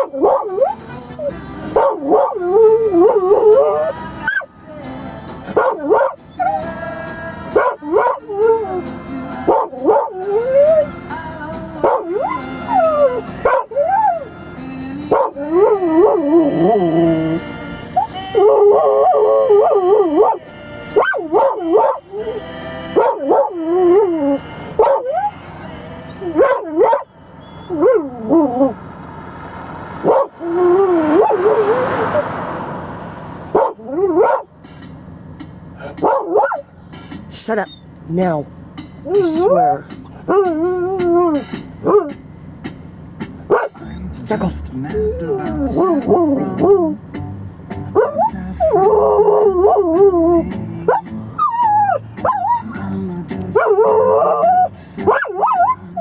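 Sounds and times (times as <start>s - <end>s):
dog howling and whining: 0.0s - 4.5s, 5.8s - 6.7s, 7.6s - 8.9s, 9.7s - 11.0s, 11.9s - 14.3s, 15.2s - 17.4s, 18.0s - 20.4s, 21.0s - 28.8s, 30.1s - 31.7s, 39.1s - 42.1s, 45.2s - 47.0s, 48.0s - 56.0s
dog yipping: 0.0s - 4.5s, 5.5s - 6.7s, 7.6s - 8.9s, 9.5s - 10.9s, 11.8s - 14.3s, 15.1s - 17.0s, 18.0s - 20.4s, 21.0s - 28.8s, 30.0s - 31.6s, 33.5s - 34.5s, 35.8s - 37.9s, 39.1s - 42.2s, 43.5s - 44.0s, 48.0s - 56.0s.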